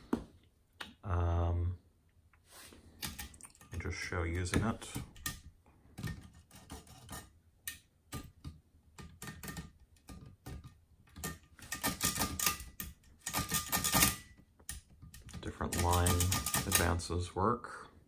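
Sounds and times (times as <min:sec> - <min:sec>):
manual typewriter clicking: 0:11.1 - 0:17.1.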